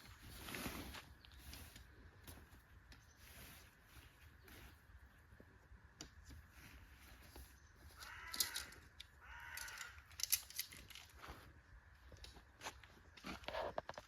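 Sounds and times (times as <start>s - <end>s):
light clicks and rustles: 5.9s - 14.0s
crow cawing: 8.0s - 10.1s.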